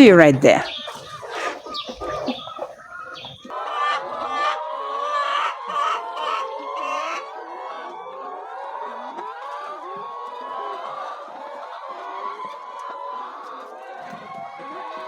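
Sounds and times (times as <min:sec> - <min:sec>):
hens clucking: 0:00.0 - 0:14.9.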